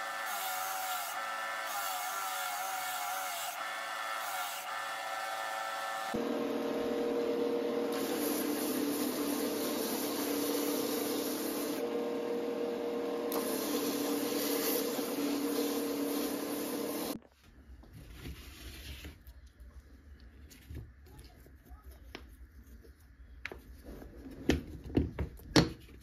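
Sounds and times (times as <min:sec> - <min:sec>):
electric sander grinding wood: 0:00.0 - 0:17.2.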